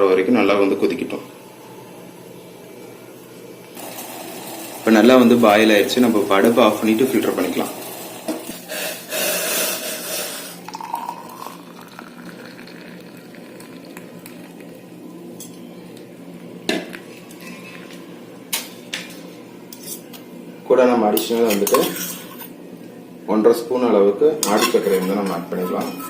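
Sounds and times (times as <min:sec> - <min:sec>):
pot and cutlery clinking and scraping: 0:24.4 - 0:26.0.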